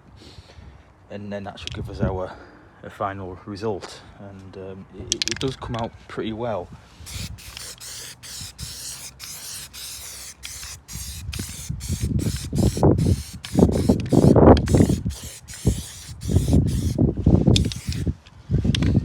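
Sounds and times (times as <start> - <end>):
aerosol can spraying: 7.1 - 18.1.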